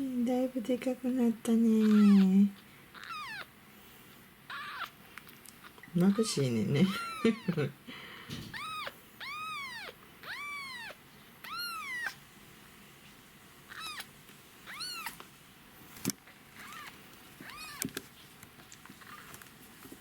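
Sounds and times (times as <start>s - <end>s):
kitten meowing: 1.8s - 3.5s, 4.5s - 5.0s, 6.9s - 7.6s, 8.5s - 12.2s, 13.7s - 15.2s, 16.6s - 17.9s.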